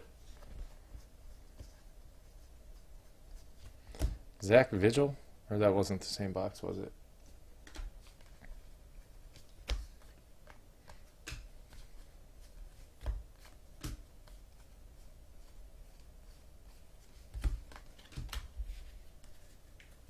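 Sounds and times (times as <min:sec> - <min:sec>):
cards sliding and shuffling: 0:09.2 - 0:20.0.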